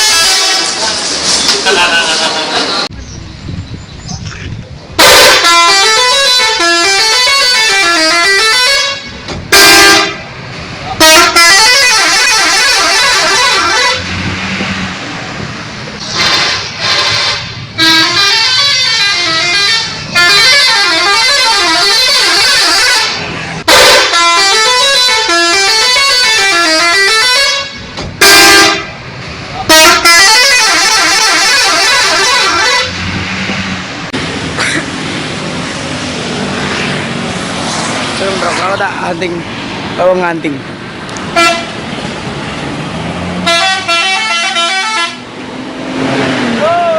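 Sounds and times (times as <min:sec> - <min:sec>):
multi-tone bus horns melody: 0:00.0 - 0:01.1, 0:05.0 - 0:15.0, 0:16.0 - 0:33.9, 0:41.3 - 0:41.8, 0:43.4 - 0:46.6.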